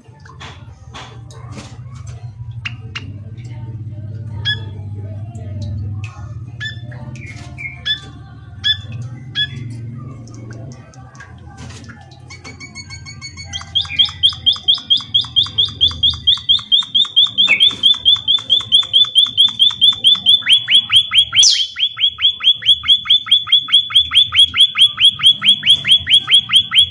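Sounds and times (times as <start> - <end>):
bird chirping: 6.6 - 10.7, 12.2 - 26.9
rapid high bird trill: 12.3 - 26.9.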